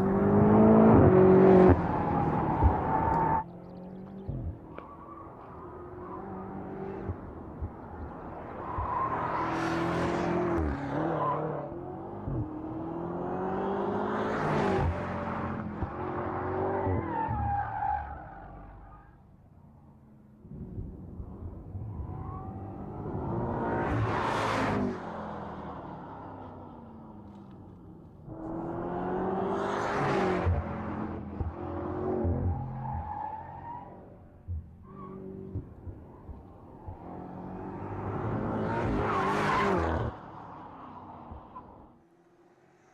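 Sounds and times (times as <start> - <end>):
car engine accelerating through gears: 0.0 - 4.8.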